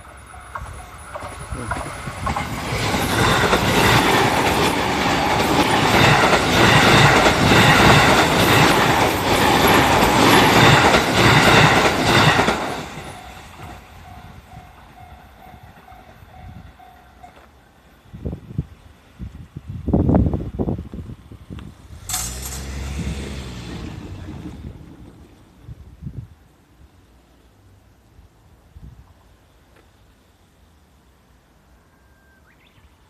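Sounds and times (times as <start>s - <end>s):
level-crossing warning bell: 0.0s - 2.2s, 12.6s - 17.5s
train wheels clacking over rail joints: 0.3s - 13.9s.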